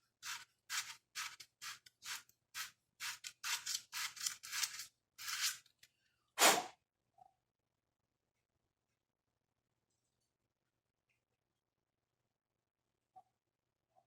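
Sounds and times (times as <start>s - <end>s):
hand sanding with sandpaper: 0.2s - 5.6s.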